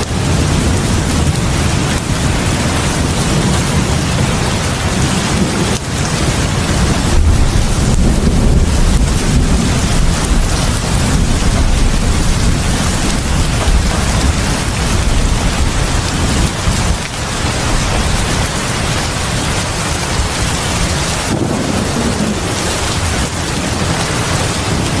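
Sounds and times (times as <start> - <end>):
heavy rain pouring: 0.0 - 25.0
deep low rumble: 6.2 - 19.6.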